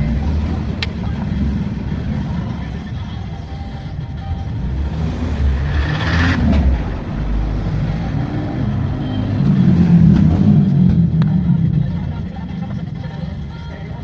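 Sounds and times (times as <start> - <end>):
car engine rumbling: 0.0 - 14.0.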